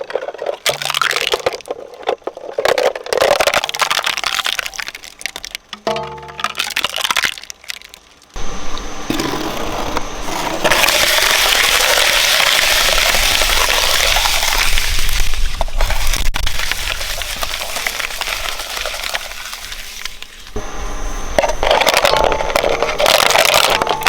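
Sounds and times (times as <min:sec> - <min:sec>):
cutters crunching and cracking: 0:00.0 - 0:08.0, 0:21.4 - 0:24.0
shredder motor: 0:20.6 - 0:24.0.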